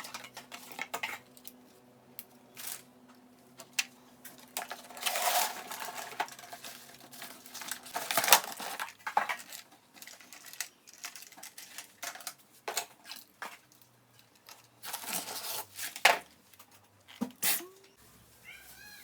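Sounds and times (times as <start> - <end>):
packaging rustling and crinkling: 4.2 - 16.2.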